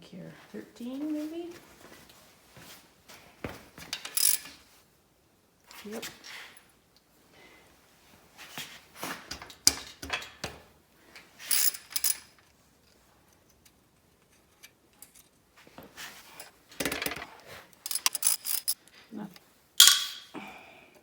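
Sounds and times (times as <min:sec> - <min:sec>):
metal engine parts clinking: 0:04.0 - 0:04.6, 0:11.5 - 0:12.4, 0:16.4 - 0:18.8, 0:19.8 - 0:20.3.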